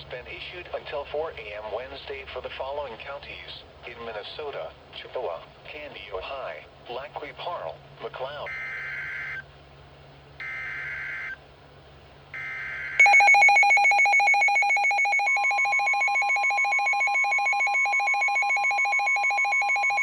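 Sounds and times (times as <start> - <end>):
steady warning tone: 8.4 - 9.4, 10.4 - 11.4, 12.3 - 20.0
rapid pulsing alarm beep: 8.5 - 9.4, 10.4 - 11.4, 12.4 - 20.0.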